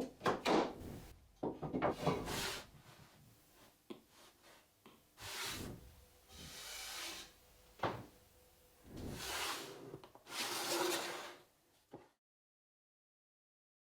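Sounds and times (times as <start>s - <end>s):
long rubbing strokes: 2.0s - 3.2s, 5.2s - 7.5s, 8.9s - 11.4s.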